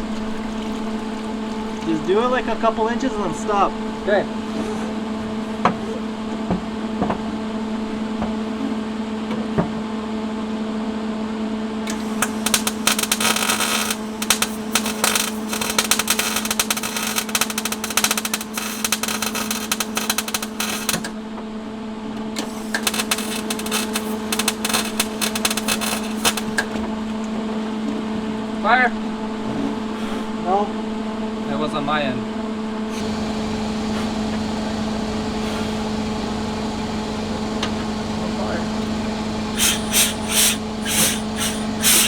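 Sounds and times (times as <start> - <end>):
electrical hum: 0.0 - 42.0
welding arc crackling: 11.9 - 21.2, 22.4 - 27.4, 32.9 - 42.0.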